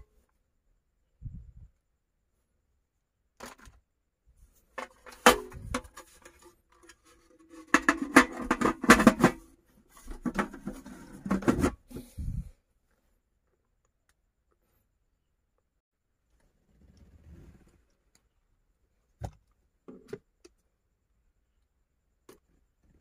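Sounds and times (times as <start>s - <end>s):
objects being handled: 4.6s - 12.5s.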